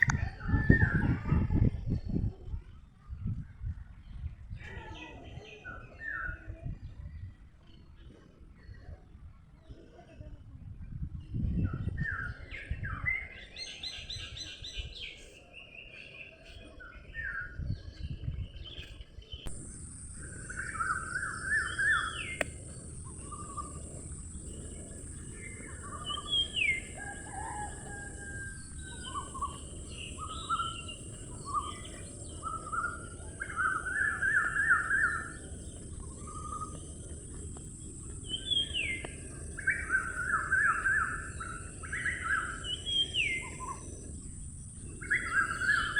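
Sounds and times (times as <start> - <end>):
birds chirping and trilling: 11.2 - 45.9
steady high-pitched hiss: 19.5 - 45.9
steady low rumble: 19.5 - 45.9.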